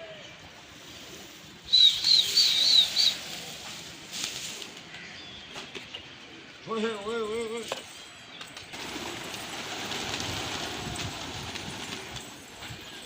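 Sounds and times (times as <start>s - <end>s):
breathy high warbling whistle: 1.7s - 3.2s.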